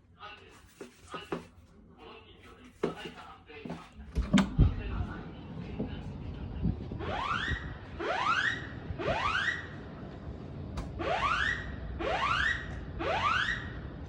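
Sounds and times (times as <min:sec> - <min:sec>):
fire alarm rising whoop: 0:07.0 - 0:09.8, 0:11.0 - 0:13.9.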